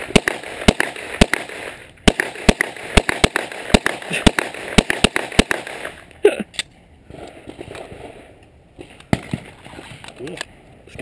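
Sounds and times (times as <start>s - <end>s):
rapid gunshots: 0.0s - 6.0s.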